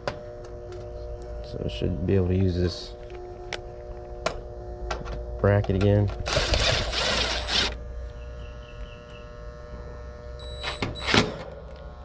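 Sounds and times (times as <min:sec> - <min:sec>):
steady hum: 0:00.0 - 0:12.0
power driver whirring: 0:03.1 - 0:08.3.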